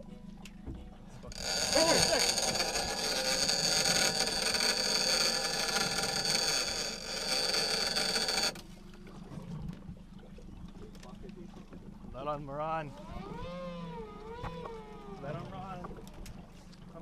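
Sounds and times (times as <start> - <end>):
fishing reel drag screaming: 1.3 - 8.6.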